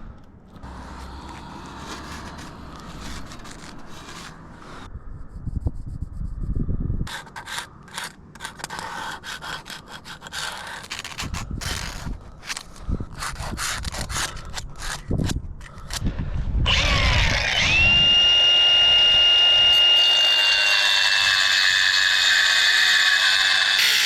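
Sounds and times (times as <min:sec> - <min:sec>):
power tool whining: 0:00.5 - 0:04.9, 0:10.8 - 0:12.6, 0:16.6 - 0:24.0
short scraping strokes: 0:00.6 - 0:04.9, 0:07.1 - 0:15.1.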